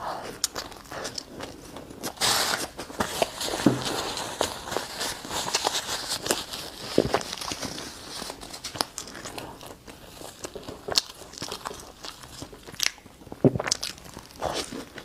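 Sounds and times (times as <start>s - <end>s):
person chewing crunchy food: 0.0s - 15.0s.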